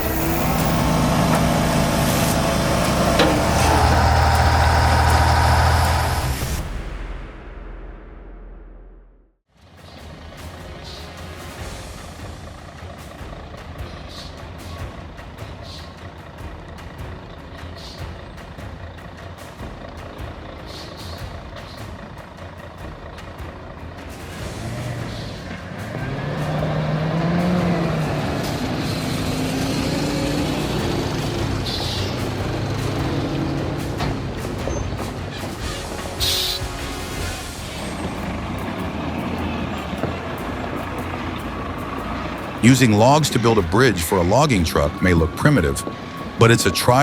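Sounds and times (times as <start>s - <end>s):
heavy diesel engine rumbling: 0.0s - 6.8s, 9.6s - 47.0s
machine clanks and knocks: 2.4s - 5.1s, 32.2s - 35.6s.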